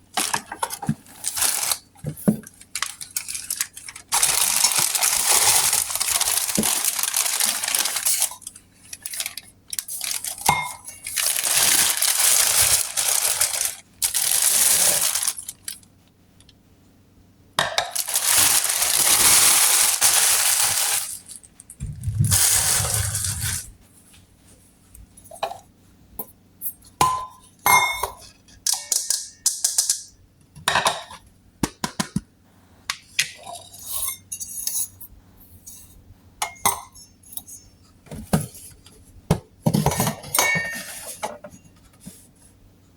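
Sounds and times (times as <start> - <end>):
packaging rustling and crinkling: 0.1 - 15.9, 17.9 - 23.8.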